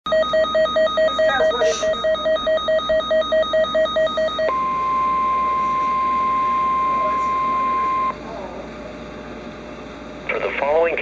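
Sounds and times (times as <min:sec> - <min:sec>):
rapid pulsing electronic beep: 0:00.1 - 0:08.2
steady alarm tone: 0:00.1 - 0:08.2.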